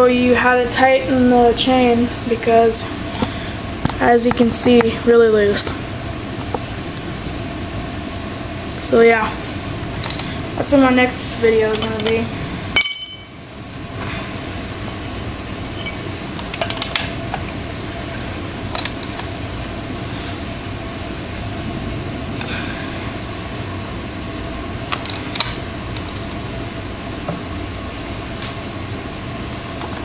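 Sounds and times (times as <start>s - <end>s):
wrench clinking on metal bolts: 11.7s - 16.0s.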